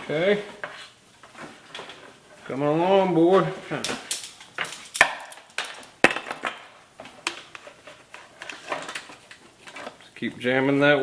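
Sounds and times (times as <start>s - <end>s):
cable clicking and knocking in frame: 3.8s - 6.7s.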